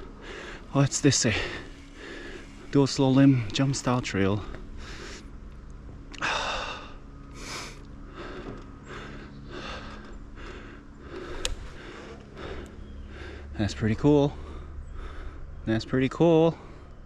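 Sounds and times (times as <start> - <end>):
man breathing hard: 0.0 - 2.8, 4.5 - 5.4, 6.1 - 13.6, 14.2 - 15.6.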